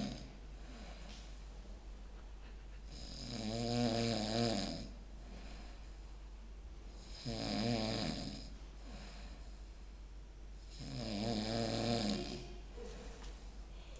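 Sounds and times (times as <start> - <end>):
pet snoring: 0.0 - 1.0, 2.9 - 5.6, 6.9 - 9.3, 10.6 - 12.6.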